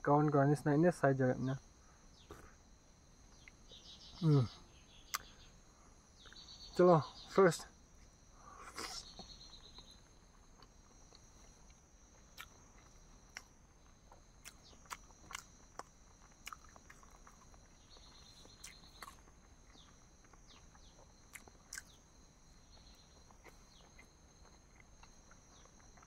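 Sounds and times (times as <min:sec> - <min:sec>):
cricket trilling: 0:00.0 - 0:26.0
high insect drone: 0:00.0 - 0:26.0
mouth chewing clicks and smacks: 0:05.1 - 0:05.4, 0:10.6 - 0:22.0, 0:22.8 - 0:26.0.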